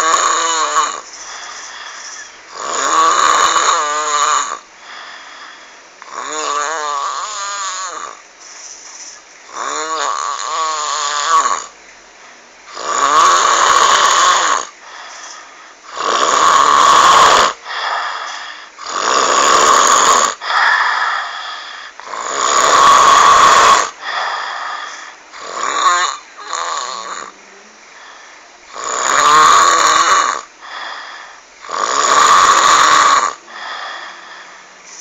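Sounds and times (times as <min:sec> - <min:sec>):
person snoring loudly: 0:00.0 - 0:05.3, 0:06.0 - 0:08.2, 0:09.5 - 0:11.8, 0:12.7 - 0:27.4, 0:28.0 - 0:35.0
quiet breaths: 0:00.0 - 0:11.2, 0:14.3 - 0:16.0, 0:17.5 - 0:18.9, 0:20.2 - 0:22.2, 0:23.9 - 0:25.5, 0:26.1 - 0:31.8, 0:32.9 - 0:35.0.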